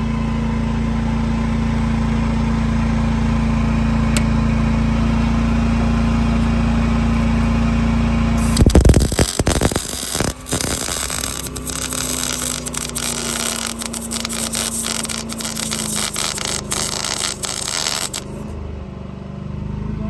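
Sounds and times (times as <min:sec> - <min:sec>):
welding arc crackling and sizzling: 0:05.0 - 0:18.5.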